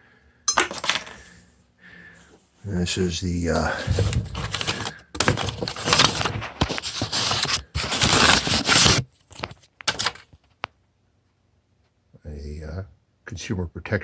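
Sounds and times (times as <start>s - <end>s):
paper scraping and rustling: 3.6s - 10.2s.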